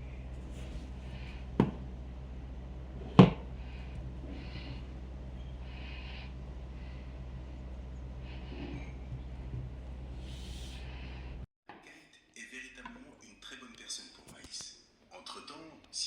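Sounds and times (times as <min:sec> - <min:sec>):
low hum: 0:00.0 - 0:11.5.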